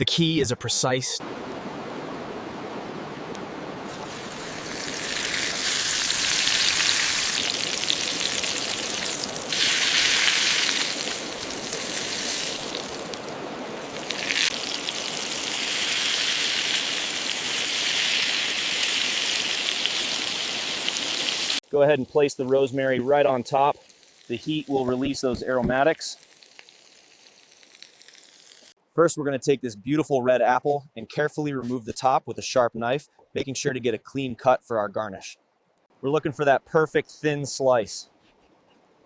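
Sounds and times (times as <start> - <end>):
steak sizzling in a pan: 3.9 - 21.6, 23.8 - 24.8, 26.1 - 28.8.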